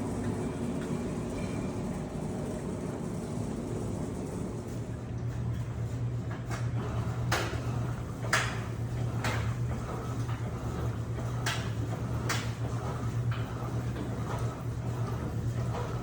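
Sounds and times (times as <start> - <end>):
washing machine motor hum: 0.0 - 16.0.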